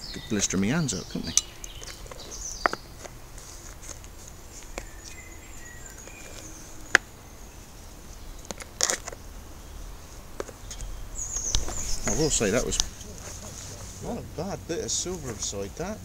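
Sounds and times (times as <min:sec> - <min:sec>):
sharp clicks and snaps: 0:01.3 - 0:03.2.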